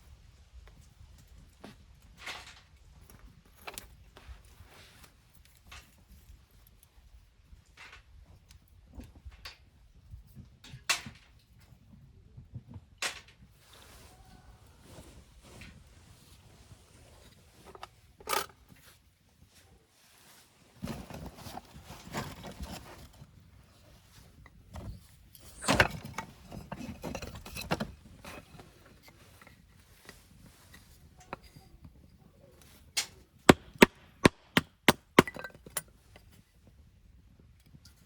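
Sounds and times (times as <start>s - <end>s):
wood scraping and rustling: 20.1s - 32.0s.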